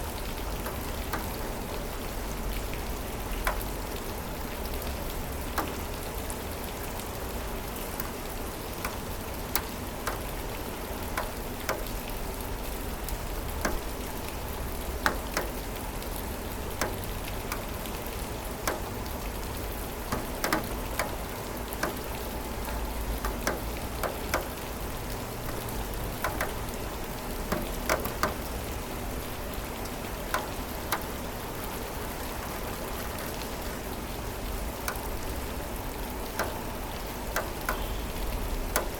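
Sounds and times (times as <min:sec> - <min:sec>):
drops ticking on surface: 0:00.0 - 0:32.4, 0:34.4 - 0:38.9
steady rain falling: 0:00.0 - 0:38.9.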